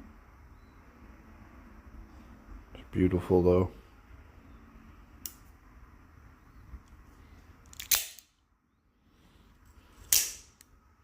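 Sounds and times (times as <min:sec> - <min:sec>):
knife blade snapping: 0:10.1 - 0:10.5.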